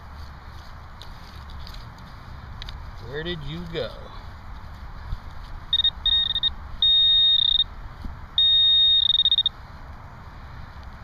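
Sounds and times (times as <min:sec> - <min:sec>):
metal detector probe alert tone: 0:05.7 - 0:07.7, 0:08.4 - 0:09.5.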